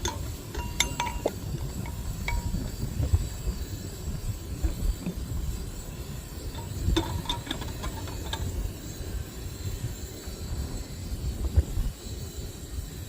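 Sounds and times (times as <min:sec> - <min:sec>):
glass clinks and taps: 0:00.0 - 0:02.6
wind buffeting microphone: 0:00.0 - 0:13.0.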